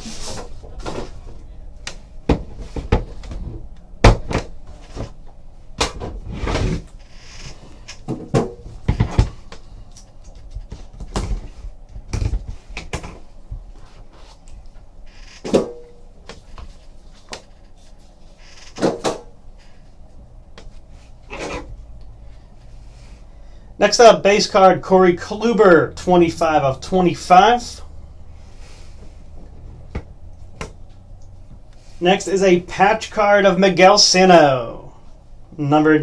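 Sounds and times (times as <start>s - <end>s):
cardboard and cards knocking and scraping: 0.0s - 5.2s, 5.8s - 14.4s, 15.1s - 19.7s.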